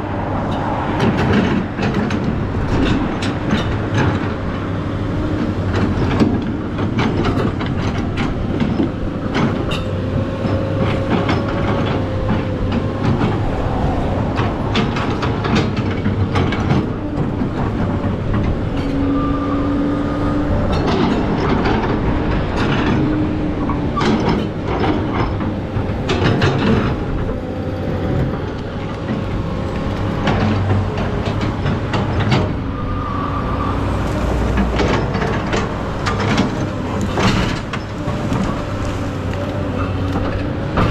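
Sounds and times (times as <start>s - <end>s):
excavator diesel engine: 0.0s - 40.9s
metal clanks and knocks: 5.4s - 13.6s.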